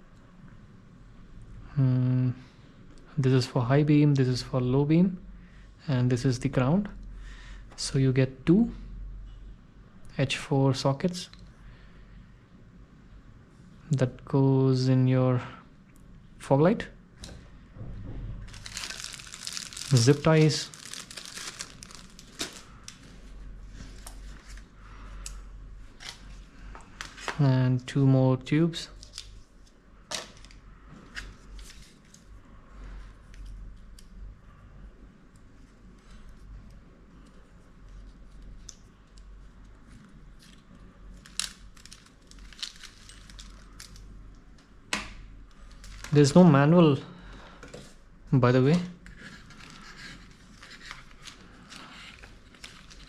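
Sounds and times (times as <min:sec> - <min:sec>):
plastic parts rustling: 0:18.5 - 0:24.6, 0:39.8 - 0:44.1, 0:45.6 - 0:46.3, 0:49.1 - 0:53.0.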